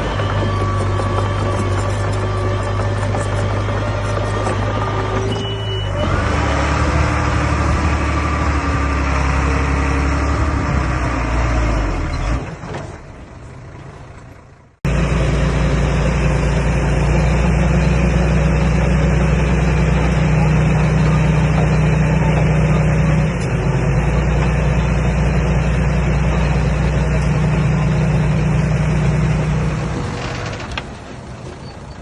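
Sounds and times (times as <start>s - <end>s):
bulldozer diesel engine running: 0.0s - 32.0s.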